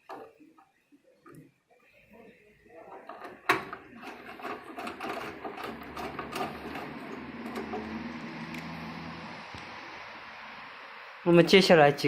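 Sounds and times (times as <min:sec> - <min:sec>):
screw clicks and rattles: 0:02.9 - 0:07.9.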